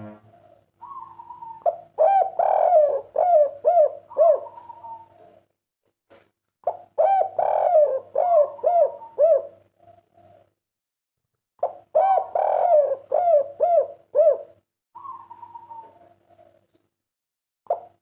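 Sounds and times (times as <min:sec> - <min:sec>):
dove cooing: 0:00.3 - 0:05.4, 0:06.7 - 0:10.5, 0:11.6 - 0:16.7.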